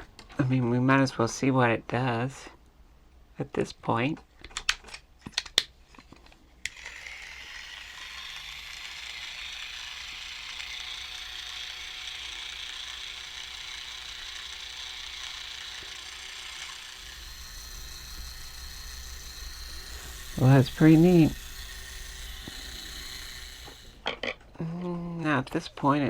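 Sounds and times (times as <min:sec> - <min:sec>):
small motor gear whir: 0:06.7 - 0:24.1.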